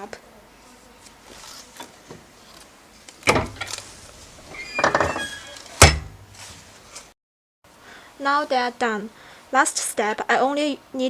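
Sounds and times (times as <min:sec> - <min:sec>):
heat press heavy thunk: 0:03.2 - 0:04.0, 0:04.8 - 0:06.4
rattling clatter: 0:03.3 - 0:03.9.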